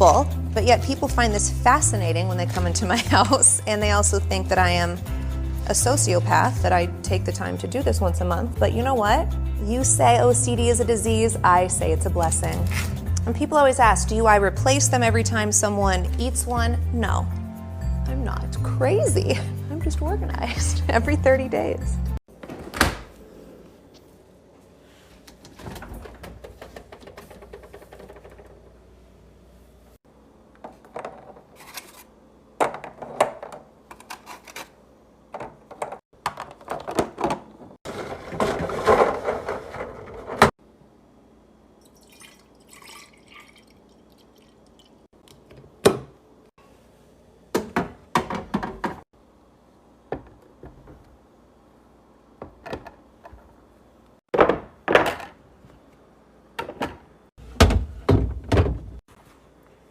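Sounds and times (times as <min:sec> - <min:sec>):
containers knocking and clattering: 0:25.6 - 0:28.7, 0:35.4 - 0:40.5
liquid pouring into a container: 0:41.8 - 0:45.0.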